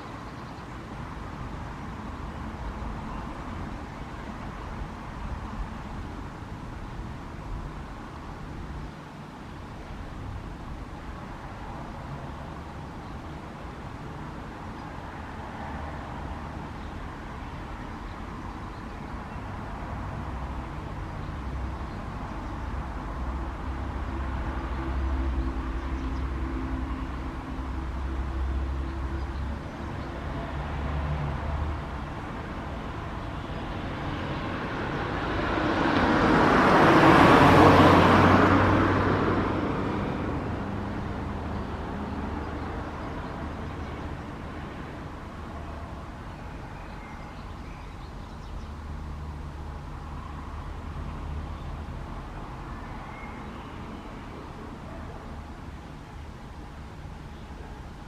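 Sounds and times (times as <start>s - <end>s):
car passing: 19.5s - 58.0s.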